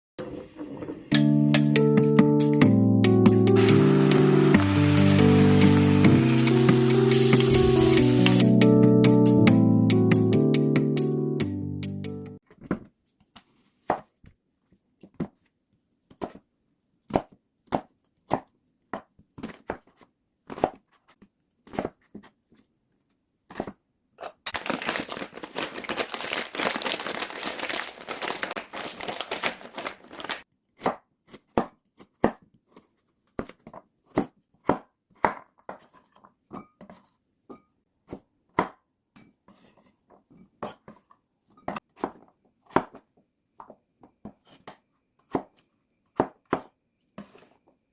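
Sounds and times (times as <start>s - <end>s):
plastic packet crinkling: 24.5s - 30.4s
knife chopping on cutting board: 30.8s - 32.4s, 42.0s - 43.0s.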